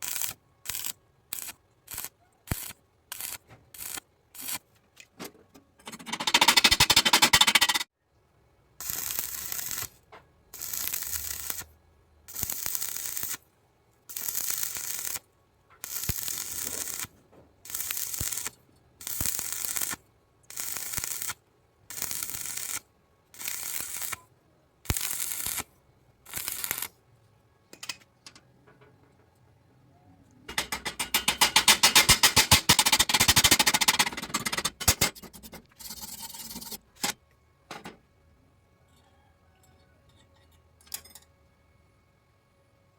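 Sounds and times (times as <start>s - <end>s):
welding arc crackling: 0.0s - 4.6s, 8.8s - 10.0s, 10.6s - 11.7s, 12.3s - 13.4s, 14.1s - 15.2s, 15.8s - 17.1s, 17.7s - 24.2s, 24.9s - 25.7s, 26.3s - 26.9s, 30.5s - 35.4s.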